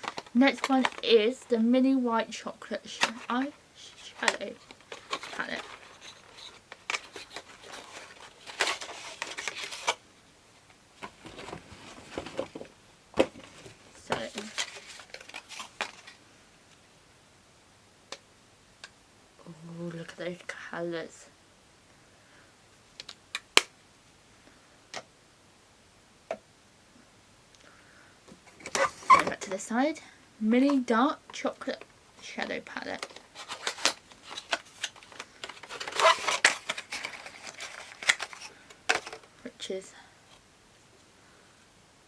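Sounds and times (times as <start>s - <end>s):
packaging clicks and rustles: 0.0s - 1.5s, 2.9s - 10.0s, 11.0s - 16.2s, 32.9s - 39.4s.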